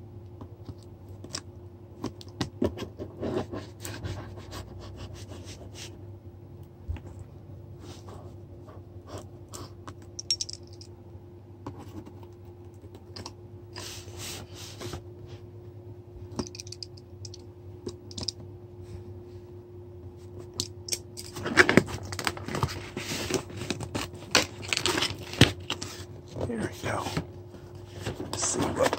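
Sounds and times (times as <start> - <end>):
cardboard tearing: 21.4 - 25.8.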